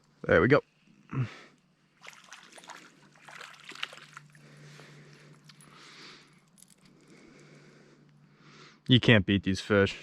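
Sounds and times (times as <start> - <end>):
stream water trickling: 1.9 - 5.7
hands splashing in water: 2.0 - 4.4.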